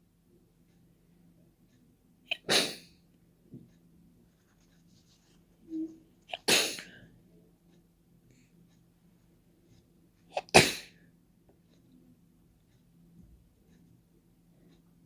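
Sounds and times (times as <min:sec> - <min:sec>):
person sneezing: 0:02.3 - 0:02.9, 0:06.3 - 0:06.9, 0:10.3 - 0:11.0.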